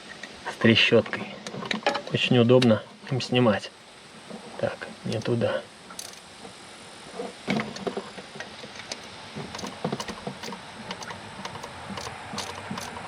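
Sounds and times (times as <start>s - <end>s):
ratchet wrench clicking: 6.0s - 6.3s, 8.9s - 13.0s.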